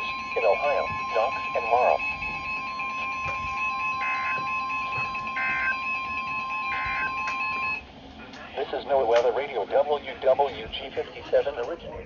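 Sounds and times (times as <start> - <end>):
electronic alarm beeping: 0.0 - 7.8
steady high alarm tone: 0.0 - 7.9.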